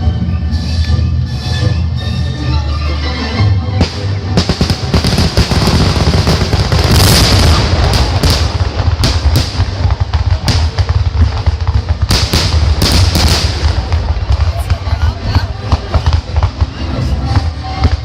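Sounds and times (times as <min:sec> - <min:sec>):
firework bangs: 0:03.8 - 0:18.0
firework crackling: 0:03.8 - 0:18.0.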